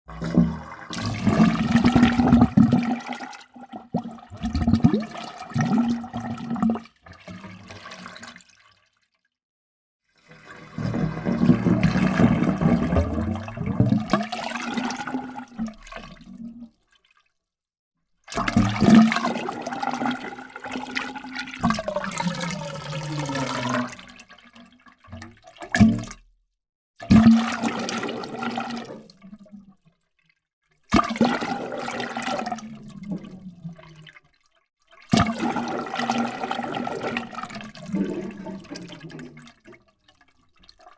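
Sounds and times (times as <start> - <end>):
water gurgling: 0.1 - 6.8, 10.3 - 16.7, 18.4 - 24.3, 35.1 - 39.6.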